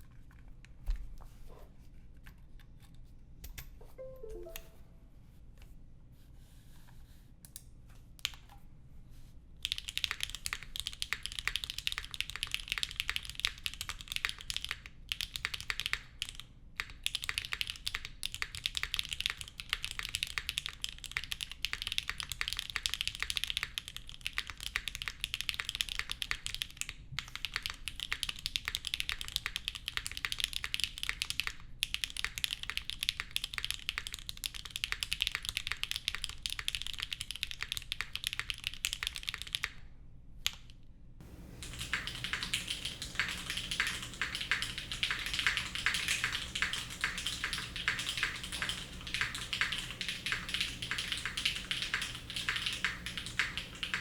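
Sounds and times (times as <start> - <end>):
typing on mechanical keyboard: 9.6 - 39.8, 41.2 - 54.0.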